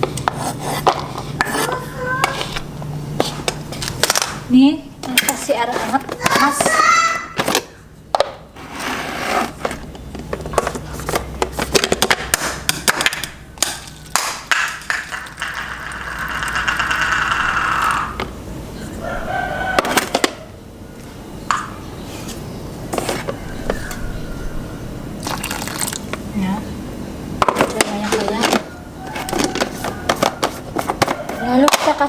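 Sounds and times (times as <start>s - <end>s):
bowl and utensils clattering: 14.6s - 18.3s
hot water pouring into bowl: 25.2s - 26.1s.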